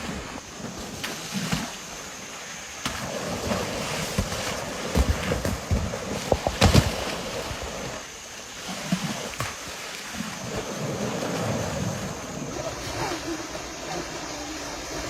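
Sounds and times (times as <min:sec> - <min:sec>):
water splashing and sloshing: 0:00.0 - 0:15.0.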